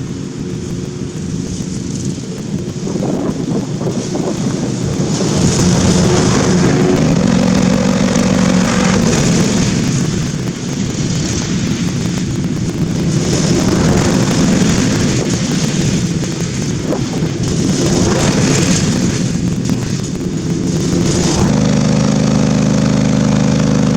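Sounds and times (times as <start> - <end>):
mower engine running: 0.0 - 23.9.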